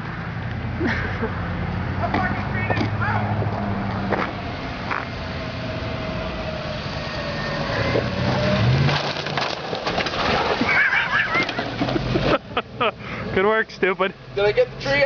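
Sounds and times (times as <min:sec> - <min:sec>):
car engine revving: 0:01.4 - 0:13.2
clicks and cracks: 0:08.8 - 0:10.7.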